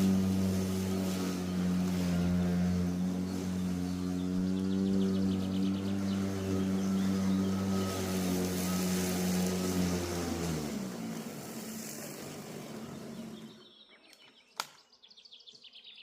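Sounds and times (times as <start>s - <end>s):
lawn mower motor hum: 0.0s - 13.8s
sharp click: 14.1s - 14.9s.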